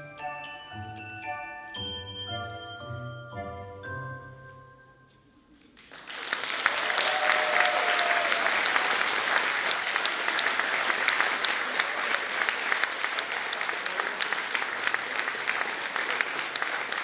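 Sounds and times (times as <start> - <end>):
audience applauding: 5.8 - 17.0.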